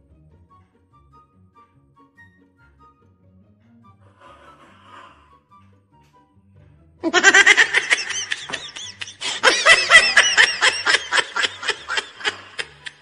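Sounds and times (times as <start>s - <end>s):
high-pitched laughing: 7.0s - 13.0s.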